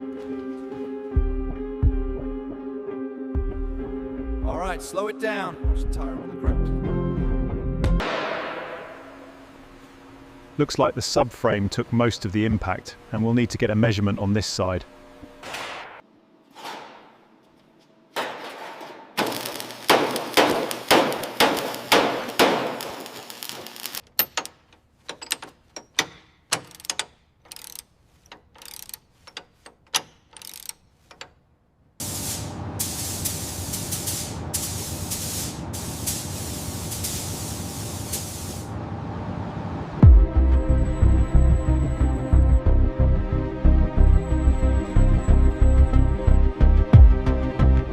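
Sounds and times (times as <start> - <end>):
sharp strikes: 8.0 - 9.5
steady hiss: 19.2 - 24.0, 32.0 - 38.7
clicks and knocks: 24.1 - 31.4.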